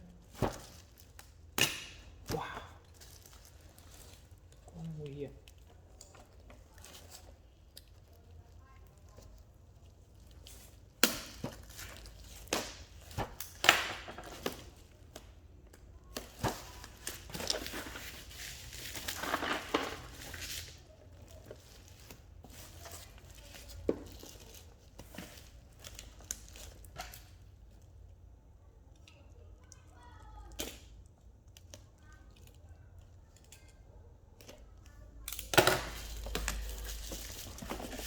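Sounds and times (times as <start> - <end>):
packaging rustling and scraping: 16.1 - 27.4, 35.3 - 38.0.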